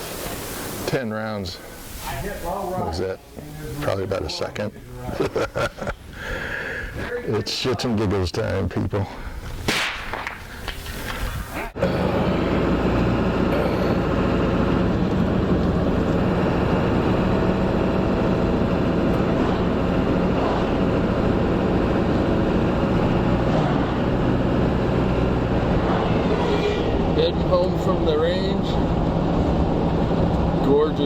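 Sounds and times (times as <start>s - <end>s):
vehicle engine and road noise: 10.3s - 31.0s.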